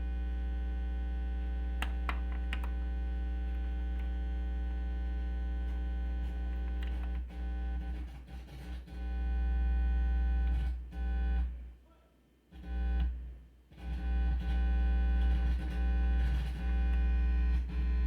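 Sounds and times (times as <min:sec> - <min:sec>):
plug crackles: 0:01.8 - 0:02.8.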